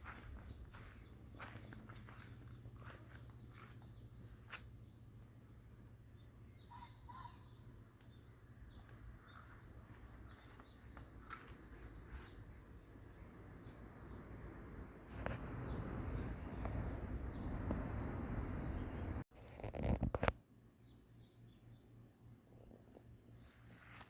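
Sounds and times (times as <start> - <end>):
small birds chirping: 0.0 - 24.0
rustling noise: 23.4 - 24.0.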